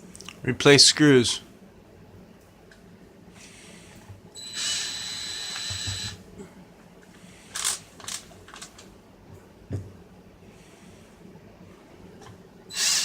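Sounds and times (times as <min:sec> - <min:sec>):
electric screwdriver whirring: 0:04.4 - 0:06.2.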